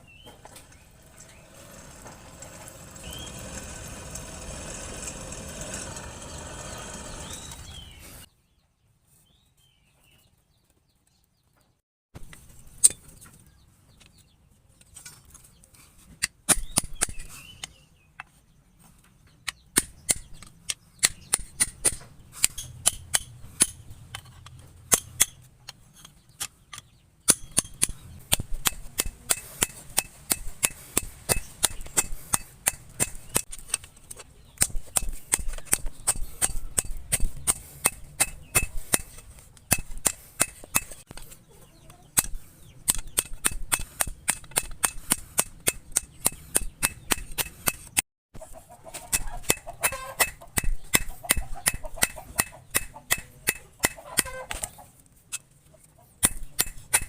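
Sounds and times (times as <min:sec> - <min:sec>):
hammer striking steel on anvil: 0:21.0 - 0:23.8, 0:27.3 - 0:33.5, 0:34.6 - 0:41.0, 0:42.2 - 0:48.0, 0:49.1 - 0:54.4, 0:56.2 - 0:57.0.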